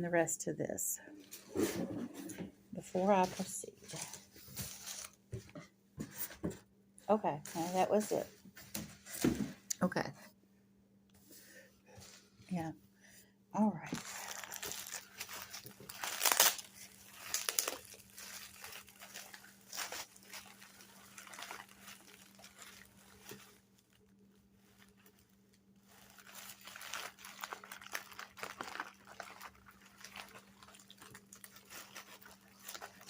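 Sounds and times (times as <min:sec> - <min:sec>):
packing material crinkling: 0:03.0 - 0:05.2, 0:07.5 - 0:08.2, 0:13.8 - 0:33.0.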